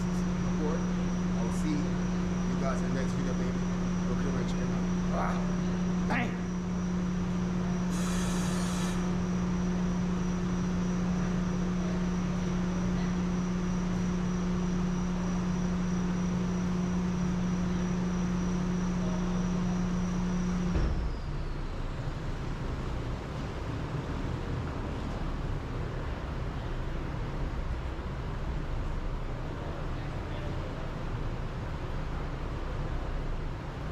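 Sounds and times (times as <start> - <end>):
electric motor whining: 7.9 - 9.1
short hiss: 7.9 - 9.1.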